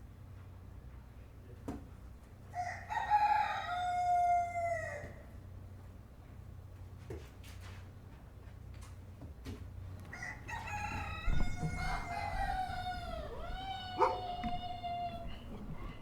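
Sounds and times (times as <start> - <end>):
rooster crowing: 2.6 - 5.2, 10.0 - 16.0.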